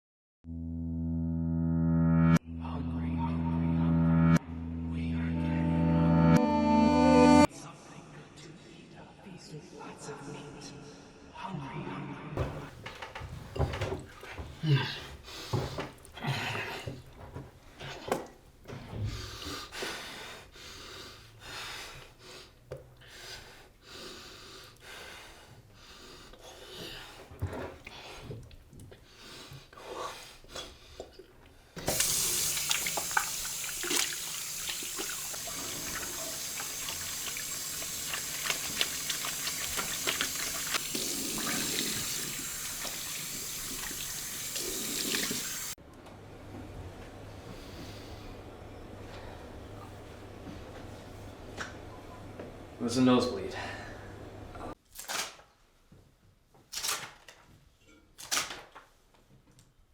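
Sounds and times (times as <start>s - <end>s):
faint knocks and rustles: 12.4s - 16.2s
tap running into sink: 31.8s - 45.7s.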